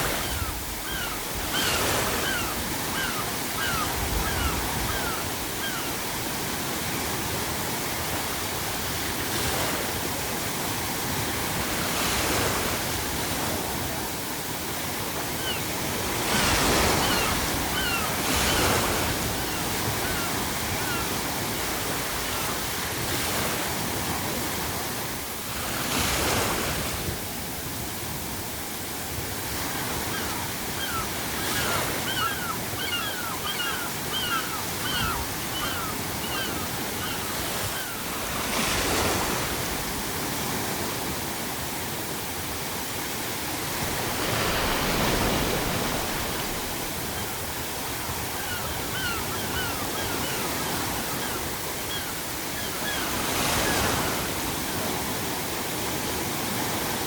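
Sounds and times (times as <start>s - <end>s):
seagulls calling: 0.0s - 6.6s, 15.2s - 23.4s, 29.6s - 39.4s, 44.2s - 54.6s
ocean waves breaking: 0.0s - 57.0s.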